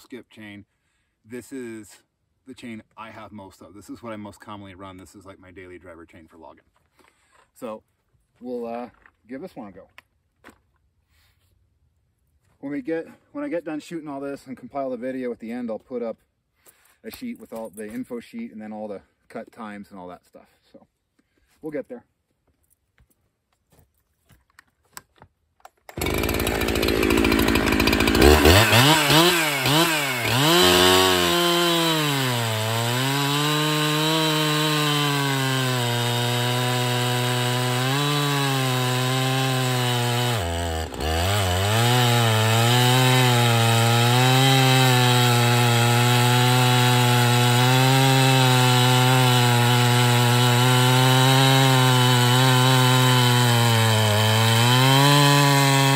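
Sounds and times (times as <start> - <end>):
chainsaw revving and cutting wood: 25.9 - 55.9.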